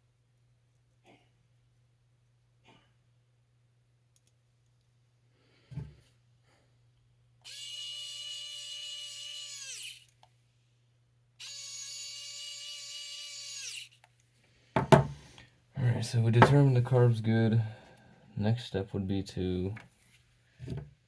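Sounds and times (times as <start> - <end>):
cordless drill whining: 7.4 - 10.2, 11.4 - 14.0
single knock: 14.8 - 15.2.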